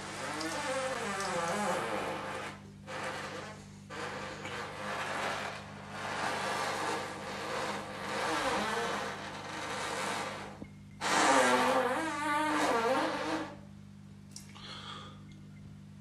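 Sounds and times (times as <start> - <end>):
person farting: 11.0 - 13.6.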